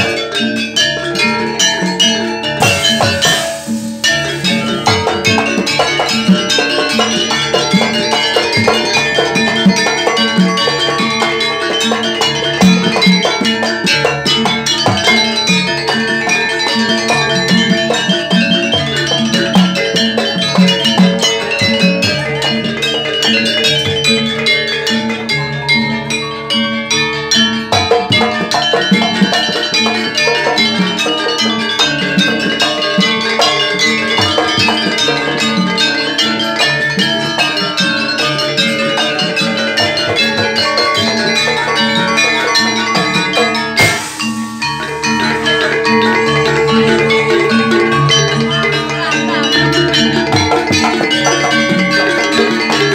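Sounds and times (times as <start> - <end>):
metallophones and gongs ringing: 0.0 - 52.9
hand drum strokes: 1.1 - 24.4, 27.6 - 52.9.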